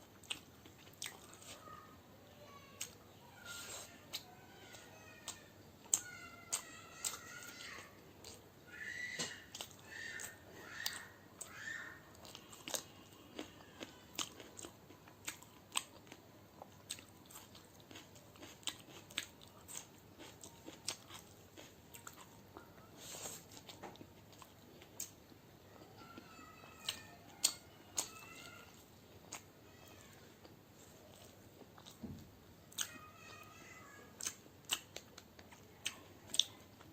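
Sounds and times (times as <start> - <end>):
chewing and crunching: 0.0 - 2.0, 9.4 - 29.5, 30.4 - 32.1, 32.7 - 36.9.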